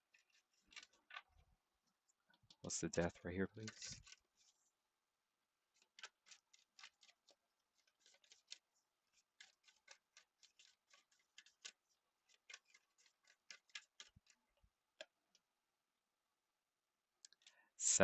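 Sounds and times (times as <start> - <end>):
cards being shuffled: 0.1 - 1.4, 3.6 - 4.6, 5.8 - 14.4.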